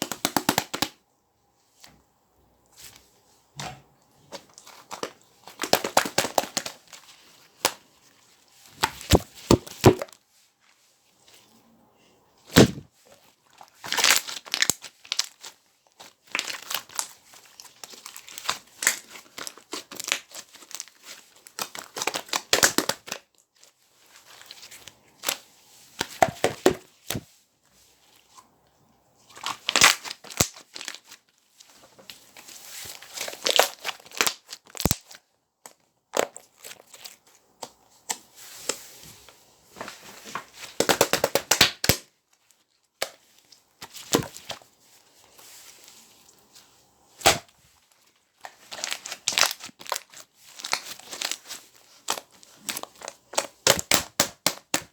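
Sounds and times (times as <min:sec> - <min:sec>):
slime squeezed with bubbles popping: 0:12.6 - 0:12.9.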